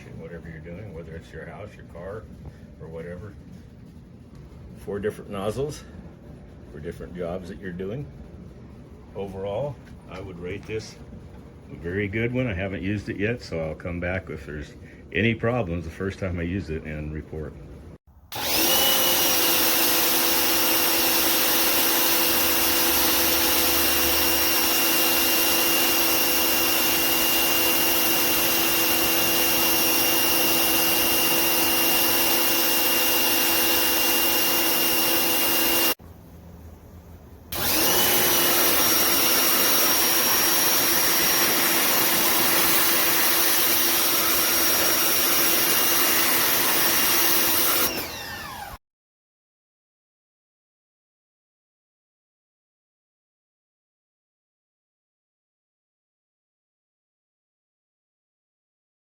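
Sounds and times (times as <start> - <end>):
pressure washer motor whine: 18.3 - 36.0, 37.5 - 48.8.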